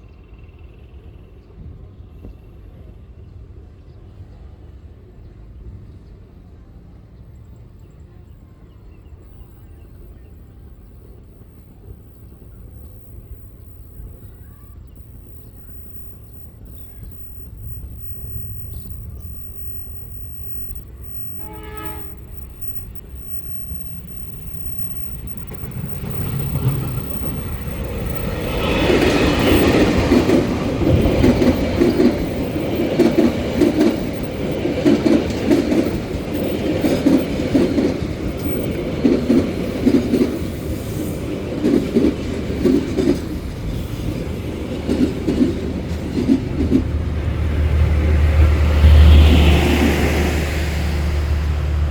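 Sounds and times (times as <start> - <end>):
train rumbling: 0.0 - 51.9
train wheels clacking: 10.9 - 51.9.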